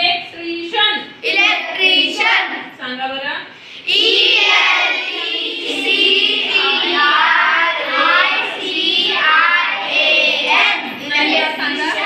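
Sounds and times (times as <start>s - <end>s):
children chanting in unison: 3.8s - 12.0s.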